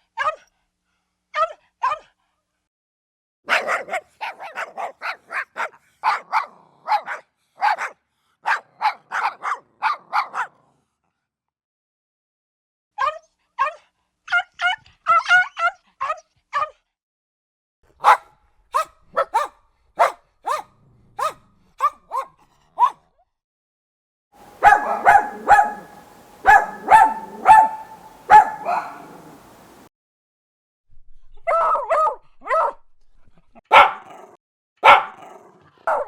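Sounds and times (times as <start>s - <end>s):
small dogs barking: 3.5s - 10.5s, 18.0s - 23.0s, 24.4s - 29.9s, 33.7s - 34.2s, 34.8s - 36.0s
background hum: 24.4s - 29.9s.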